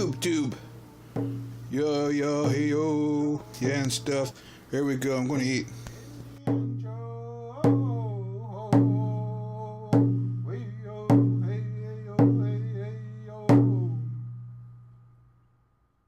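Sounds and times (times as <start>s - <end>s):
slow deep struck notes: 1.1s - 1.8s.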